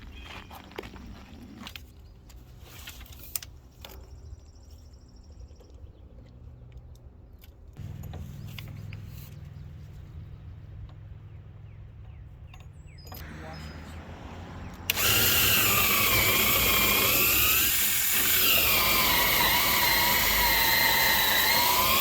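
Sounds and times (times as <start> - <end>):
motor running steadily: 14.7 - 22.0.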